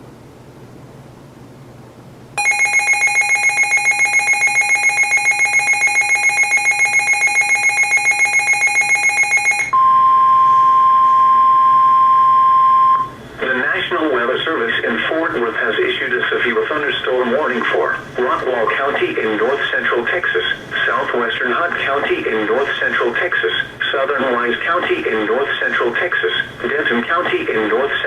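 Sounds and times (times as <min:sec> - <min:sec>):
rapid electronic alarm beeping: 0:02.4 - 0:11.0
steady warning alert tone: 0:02.4 - 0:13.1.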